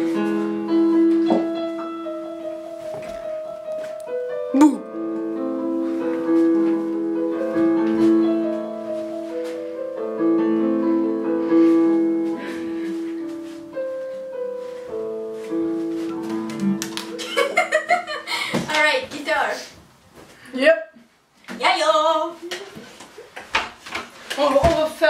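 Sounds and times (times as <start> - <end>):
piano playing held chords: 0.0 - 18.5.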